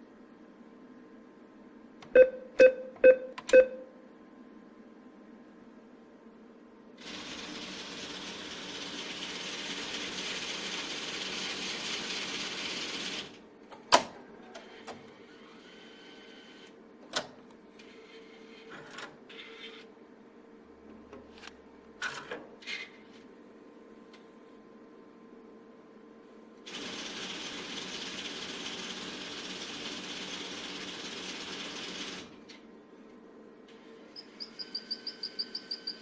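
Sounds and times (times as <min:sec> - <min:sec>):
mechanical clicks and clunks: 0:02.0 - 0:03.8, 0:13.7 - 0:15.1
cash dispenser whirring: 0:07.0 - 0:13.4, 0:26.7 - 0:32.4.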